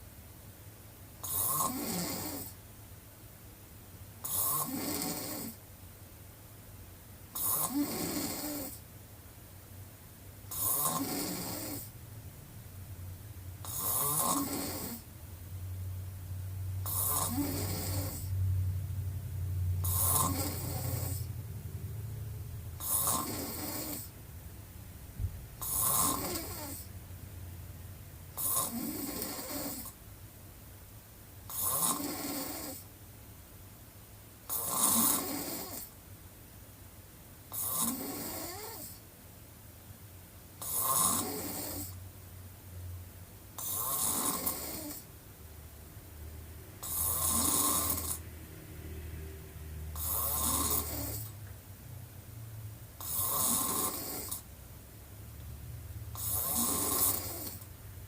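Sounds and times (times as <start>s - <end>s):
person snoring: 1.2s - 2.6s, 4.2s - 5.6s, 7.4s - 8.8s, 10.5s - 11.9s, 13.6s - 15.1s, 16.8s - 18.4s, 19.8s - 21.4s, 22.8s - 24.1s, 25.6s - 26.9s, 28.4s - 30.0s, 31.5s - 32.8s, 34.5s - 35.9s, 37.5s - 39.0s, 40.6s - 42.0s, 43.6s - 45.1s, 46.8s - 48.3s, 49.8s - 51.4s, 53.0s - 54.4s, 56.1s - 57.6s
steady low hum: 8.8s - 31.6s, 41.4s - 58.0s.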